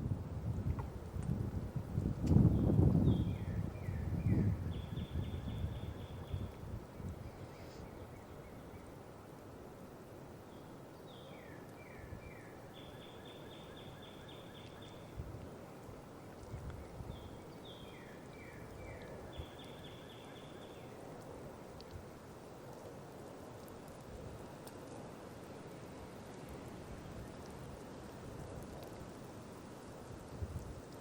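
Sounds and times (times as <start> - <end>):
songbird singing: 2.2 - 9.1, 10.4 - 15.3, 16.0 - 21.0.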